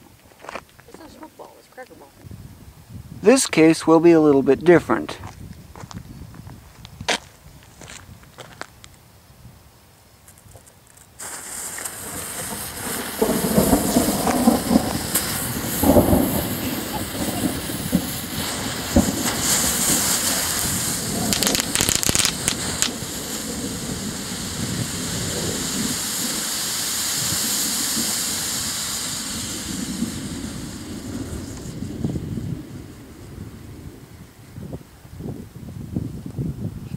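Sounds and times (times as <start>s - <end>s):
crackling: 10.2s - 33.2s
smoke balls hissing: 10.7s - 34.3s
sharp snaps and pops: 20.2s - 23.0s.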